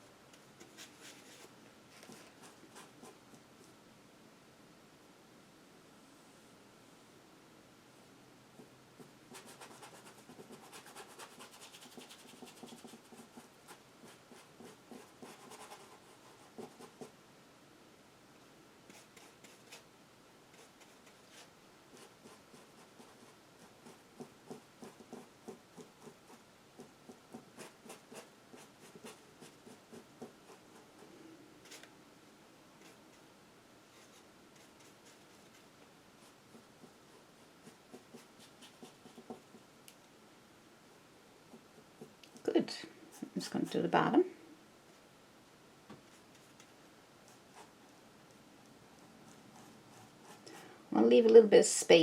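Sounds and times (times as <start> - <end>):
paintbrush scratching on canvas: 9.3 - 17.1.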